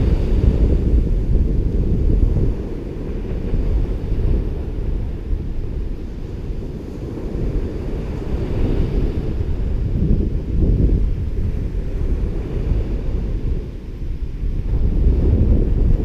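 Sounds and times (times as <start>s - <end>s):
ocean surf on beach: 0.0s - 16.0s
wind buffeting microphone: 0.0s - 16.0s.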